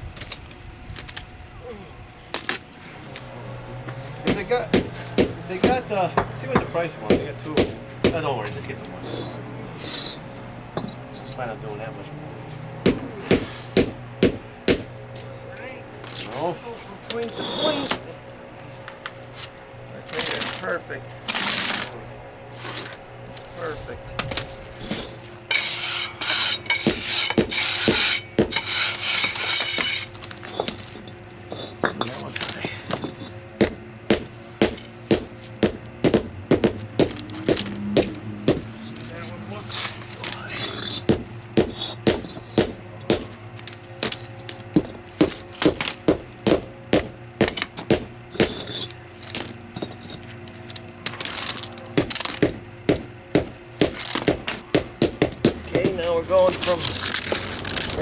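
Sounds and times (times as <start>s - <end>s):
sharp knocks: 4.2s - 8.6s, 12.8s - 15.0s, 24.2s - 30.8s, 32.9s - 38.8s, 40.1s - 43.4s, 44.0s - 49.9s, 52.0s - 56.2s
hand tool scraping gravel: 4.3s - 10.3s, 16.0s - 18.0s, 19.3s - 33.4s, 38.8s - 42.6s, 47.5s - 52.6s, 53.8s - 54.8s, 55.7s - 58.0s.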